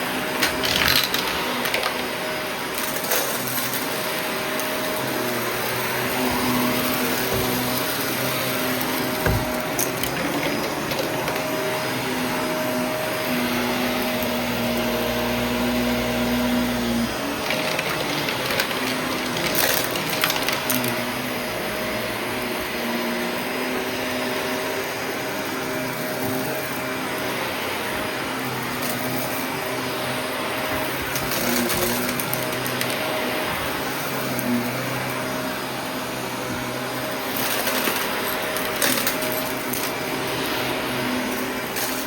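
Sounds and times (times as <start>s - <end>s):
vacuum cleaner running: 0.0s - 42.0s
debris rattling in vacuum: 0.2s - 21.2s, 30.6s - 35.6s, 36.2s - 42.0s.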